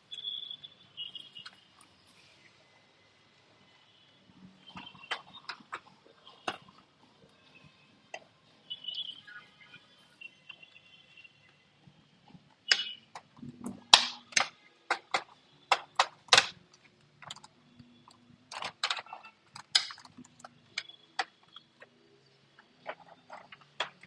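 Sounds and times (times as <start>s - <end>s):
small plastic parts clicking: 12.7s - 22.0s, 22.6s - 24.0s.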